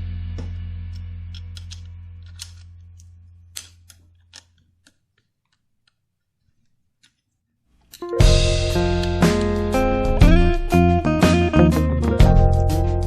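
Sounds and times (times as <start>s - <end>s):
low steady hum: 0.0s - 4.6s.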